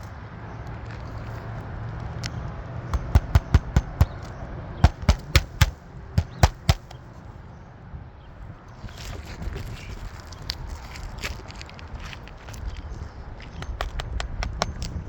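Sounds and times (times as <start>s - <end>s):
steady low hum: 1.2s - 7.7s
hammer knocking on roof: 3.0s - 6.9s.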